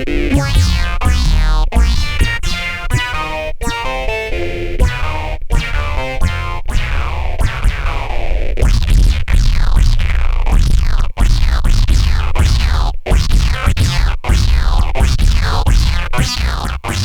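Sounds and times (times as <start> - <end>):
electronic synthesizer music: 0.0 - 8.8.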